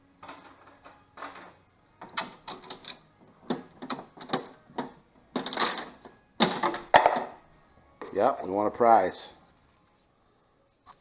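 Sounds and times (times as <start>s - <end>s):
vending machine clicks and clunks: 0.2s - 7.4s.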